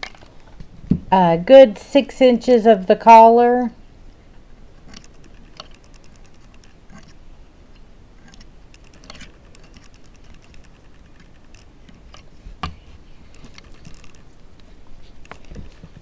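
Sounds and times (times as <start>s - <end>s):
loom tool clicking on pegs: 4.8s - 7.2s, 8.2s - 14.3s.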